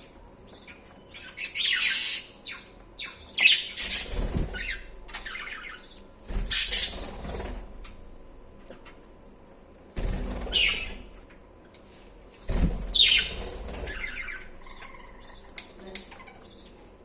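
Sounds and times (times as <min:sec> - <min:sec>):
budgerigars chirping: 0:00.5 - 0:07.2, 0:10.5 - 0:11.0, 0:12.9 - 0:16.8.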